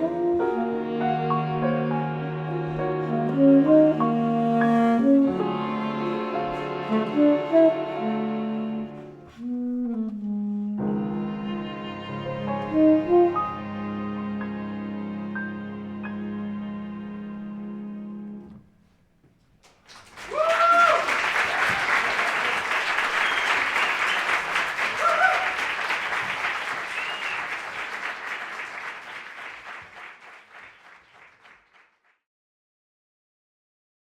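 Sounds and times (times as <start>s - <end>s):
audience applause: 19.6s - 32.0s
audience whoops: 20.0s - 30.9s.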